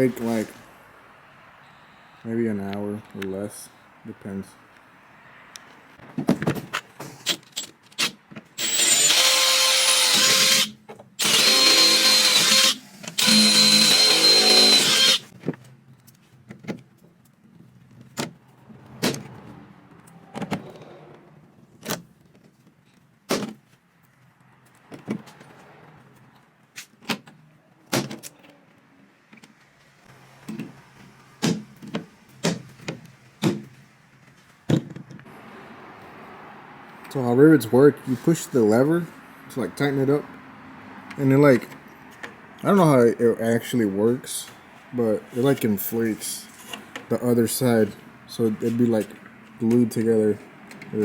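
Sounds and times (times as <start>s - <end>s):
power drill whining: 8.6s - 15.3s.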